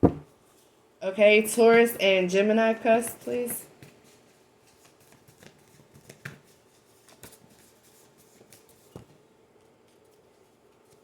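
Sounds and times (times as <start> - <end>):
cards rustling: 3.2 - 9.0.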